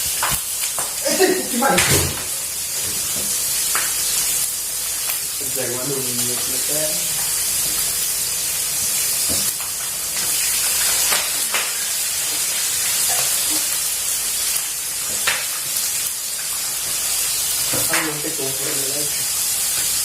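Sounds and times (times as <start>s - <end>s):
fish sizzling in hot oil: 0.0s - 20.0s.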